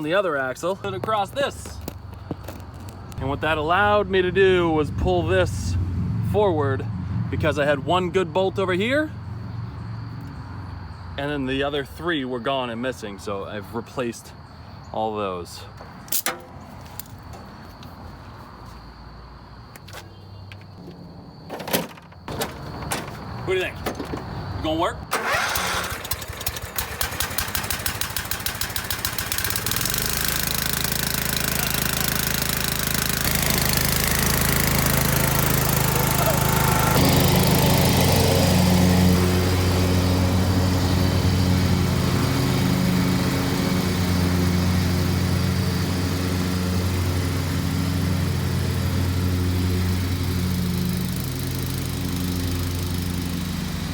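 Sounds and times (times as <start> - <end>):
engine starter cranking: 21.5 - 38.4
mower engine running: 22.2 - 53.9.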